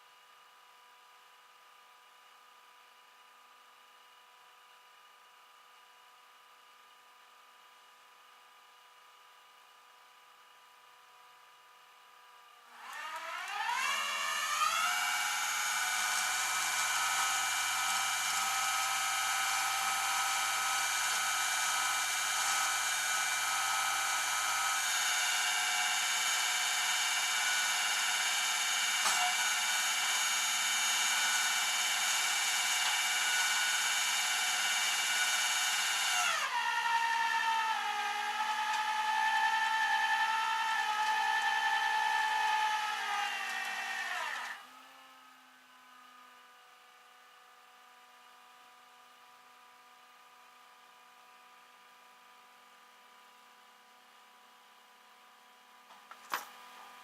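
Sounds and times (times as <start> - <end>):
power tool motor whine: 12.7 - 44.9.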